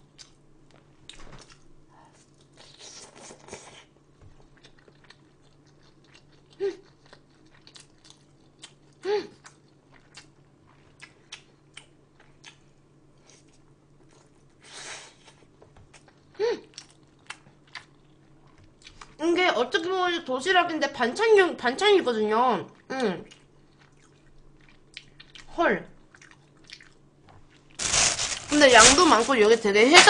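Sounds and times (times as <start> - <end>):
low electrical hum: 0.0 - 30.0
soft chewing with wet mouth clicks: 0.1 - 14.6, 15.9 - 19.2, 22.7 - 27.7.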